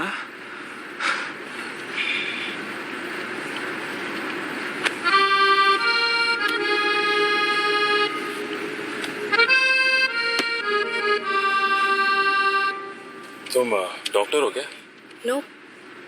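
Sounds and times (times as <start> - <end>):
music with loud held chords: 5.0 - 13.4.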